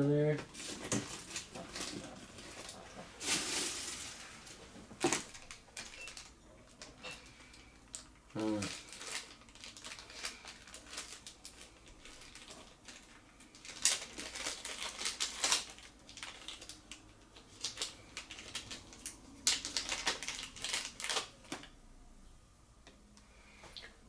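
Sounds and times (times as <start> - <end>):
packaging crinkling and clicking: 5.0 - 21.8.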